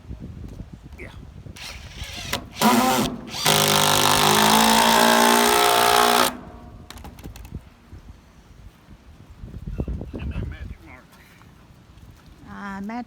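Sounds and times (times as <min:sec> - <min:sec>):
power drill whining: 0:01.6 - 0:07.0.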